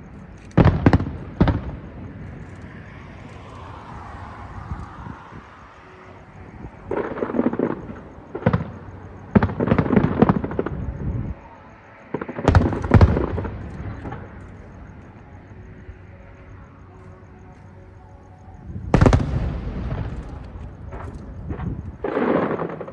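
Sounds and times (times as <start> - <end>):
fireworks crackling and banging: 18.9 - 22.9.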